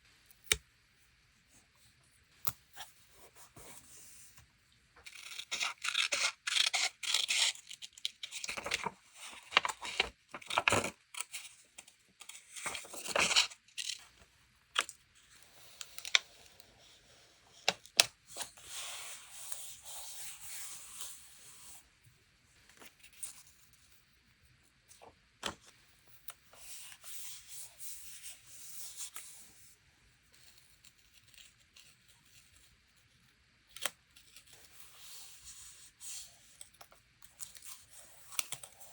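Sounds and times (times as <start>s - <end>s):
paper tearing: 5.1s - 10.8s
paper rustling: 5.1s - 11.5s, 12.2s - 14.0s
paper handling clicks: 5.1s - 14.0s.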